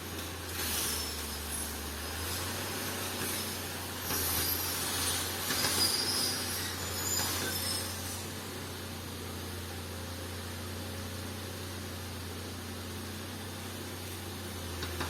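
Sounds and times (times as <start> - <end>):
diesel engine running: 0.0 - 15.0
metal squealing and scraping: 0.6 - 1.9, 3.2 - 8.4.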